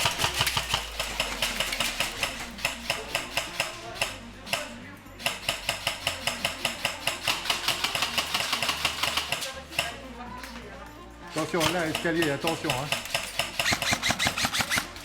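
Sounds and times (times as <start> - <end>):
airsoft rifle firing full auto: 0.0 - 10.0, 11.6 - 15.0.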